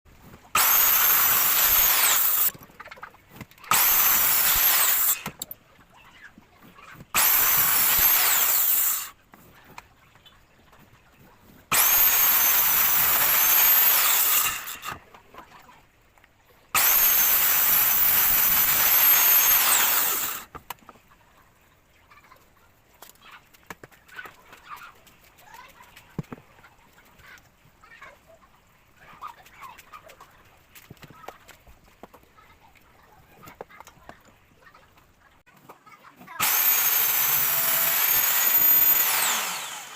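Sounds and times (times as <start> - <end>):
woodworking power tool whine: 0.6 - 2.5, 3.7 - 5.3, 7.2 - 9.1, 11.7 - 15.0, 16.8 - 20.5, 36.4 - 39.9.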